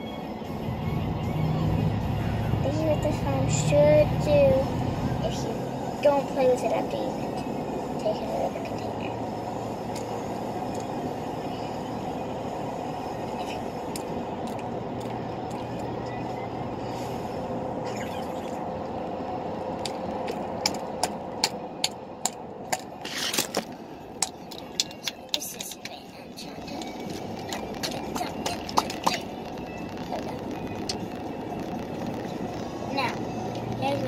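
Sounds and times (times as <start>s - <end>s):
low background rumble: 0.0s - 34.0s
sharp clicks and taps: 19.8s - 23.6s, 24.2s - 26.0s, 26.6s - 29.3s.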